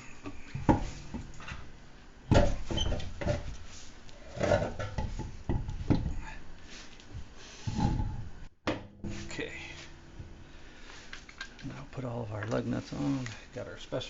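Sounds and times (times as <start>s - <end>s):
wheel knocks and clunks: 0.3s - 6.4s, 7.2s - 10.4s.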